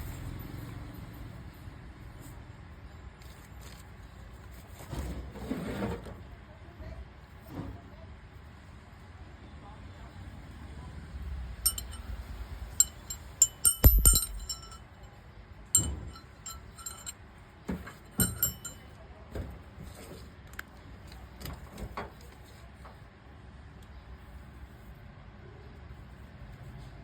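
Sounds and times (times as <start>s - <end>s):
metal parts clinking: 11.7s - 12.0s, 12.8s - 14.8s, 15.8s - 17.1s, 18.1s - 18.8s.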